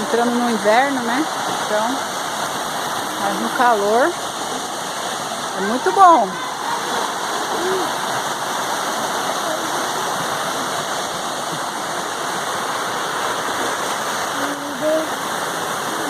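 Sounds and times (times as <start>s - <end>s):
waterfall roaring: 0.0s - 16.0s
person speaking: 14.4s - 15.1s.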